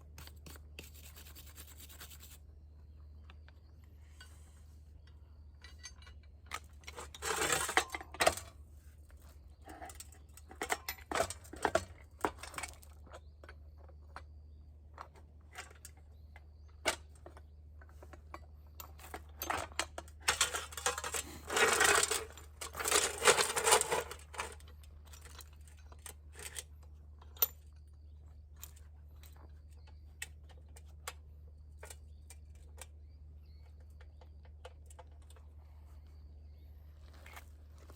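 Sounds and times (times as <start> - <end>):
metal tools clinking: 5.5 - 8.5, 18.3 - 27.8.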